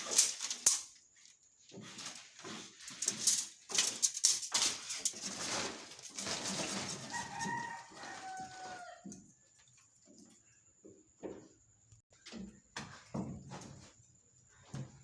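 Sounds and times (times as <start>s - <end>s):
rooster crowing: 7.0s - 9.2s.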